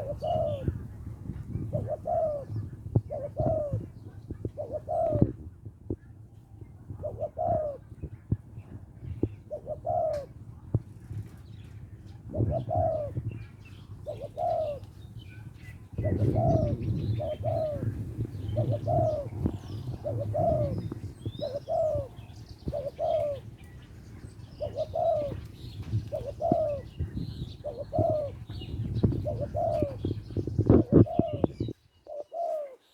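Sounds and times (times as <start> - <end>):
dove cooing: 0.0 - 5.7, 6.8 - 10.4, 12.1 - 32.8
small birds chirping faintly: 0.0 - 32.9.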